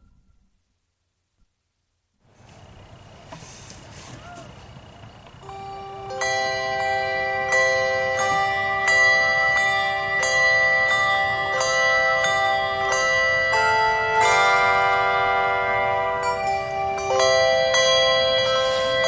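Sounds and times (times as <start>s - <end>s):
ringing bell-like melody: 5.4s - 19.0s.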